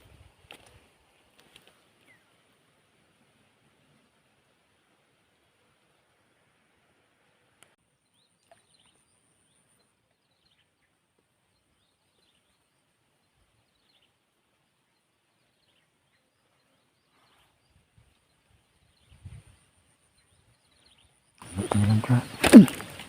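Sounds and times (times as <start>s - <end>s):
faint click: 0.4s - 1.8s, 7.6s - 7.8s
faint bird chirps: 8.0s - 23.0s.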